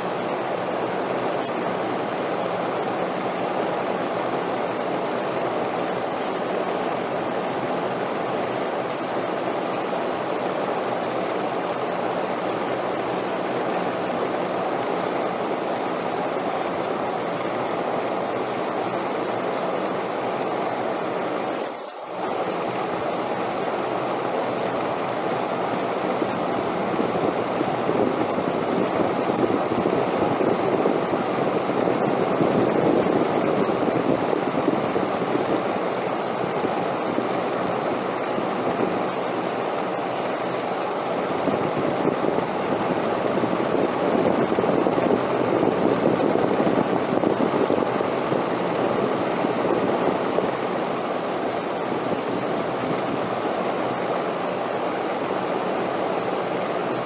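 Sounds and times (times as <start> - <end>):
rushing wind: 22.2 - 57.0.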